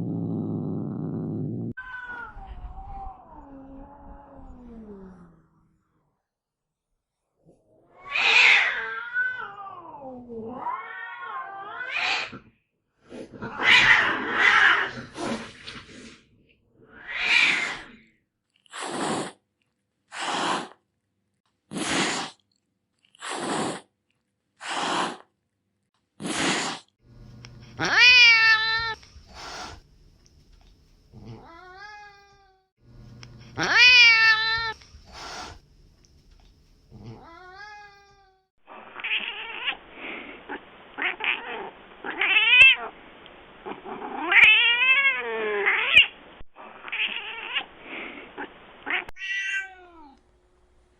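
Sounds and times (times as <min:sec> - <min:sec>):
cat meowing: 0:01.8 - 0:04.8, 0:08.0 - 0:12.3, 0:27.8 - 0:29.0, 0:31.2 - 0:32.6, 0:33.6 - 0:34.8, 0:37.0 - 0:38.4, 0:41.0 - 0:42.9, 0:44.2 - 0:46.1, 0:48.9 - 0:50.2
cats yowling and meowing: 0:01.8 - 0:05.4, 0:07.8 - 0:12.4, 0:13.4 - 0:15.0, 0:16.9 - 0:18.0, 0:27.8 - 0:29.0, 0:31.2 - 0:32.7, 0:33.6 - 0:34.8, 0:37.0 - 0:39.8, 0:41.0 - 0:42.9, 0:44.1 - 0:46.1, 0:48.9 - 0:50.2
cat hissing: 0:11.8 - 0:16.2, 0:16.8 - 0:18.1, 0:18.7 - 0:19.4, 0:20.1 - 0:20.8, 0:21.7 - 0:22.4, 0:23.2 - 0:23.9, 0:24.6 - 0:25.3, 0:26.2 - 0:27.0, 0:27.6 - 0:29.8, 0:33.5 - 0:35.6, 0:43.6 - 0:49.7.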